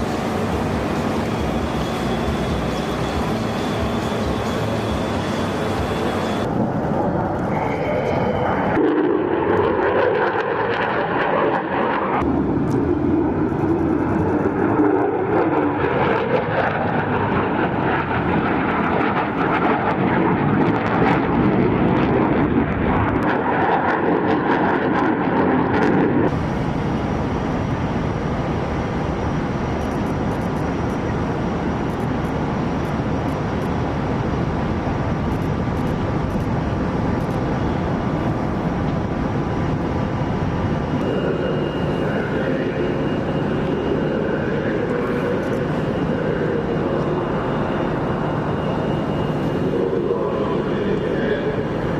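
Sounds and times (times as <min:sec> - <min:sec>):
aircraft engine noise: 0:00.0 - 0:51.9.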